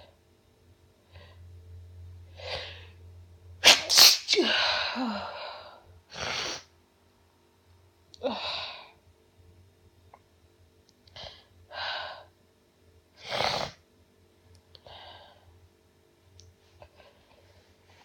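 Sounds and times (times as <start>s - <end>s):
woman sneezing: 3.6s - 5.4s.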